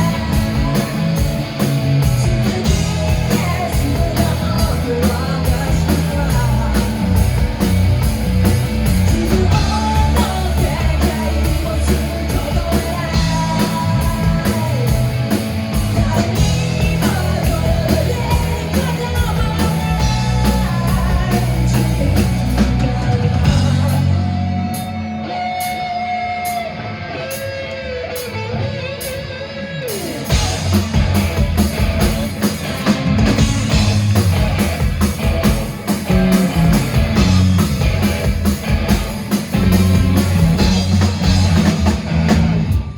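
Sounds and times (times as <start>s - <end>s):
person singing: 0.0s - 1.2s, 2.2s - 7.3s, 9.0s - 15.1s, 15.8s - 24.9s
bass guitar: 0.0s - 42.9s
drum kit: 0.0s - 42.9s
electric guitar: 0.0s - 42.9s.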